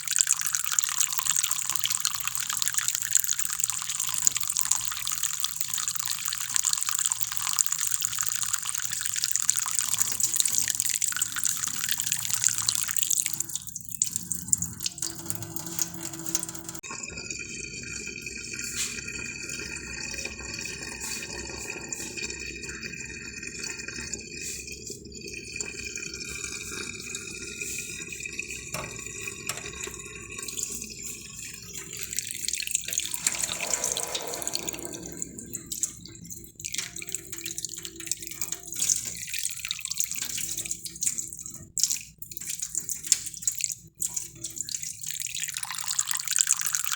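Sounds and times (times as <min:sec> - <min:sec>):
running water splashing: 0:00.0 - 0:16.8, 0:27.6 - 0:39.4.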